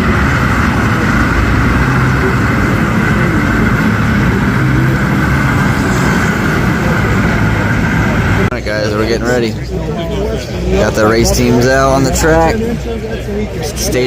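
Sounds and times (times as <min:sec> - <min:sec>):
vehicle engines idling: 0:00.0 - 0:14.0.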